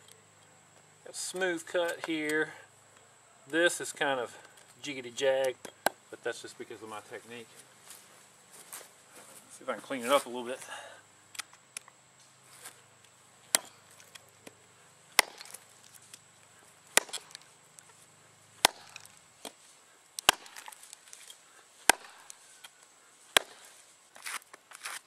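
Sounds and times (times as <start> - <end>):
hatchet chopping wood: 5.4 - 6.0, 13.5 - 16.2, 16.9 - 17.5, 18.6 - 19.6, 20.2 - 25.0.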